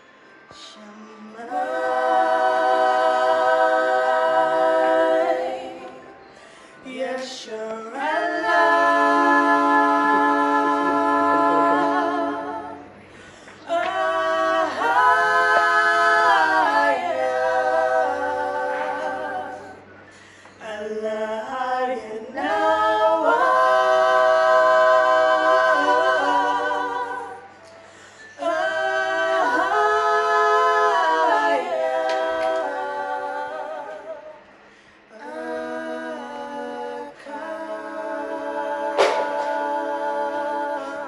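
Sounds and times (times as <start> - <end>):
a cappella voices singing chords: 0.0 - 41.0
singers breathing: 6.2 - 6.9, 13.0 - 13.7, 19.9 - 20.6, 27.7 - 28.4, 34.5 - 35.1.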